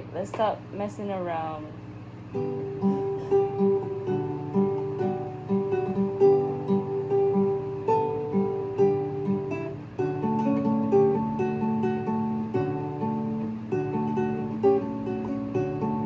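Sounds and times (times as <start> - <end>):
acoustic guitar plucking: 2.3 - 16.0.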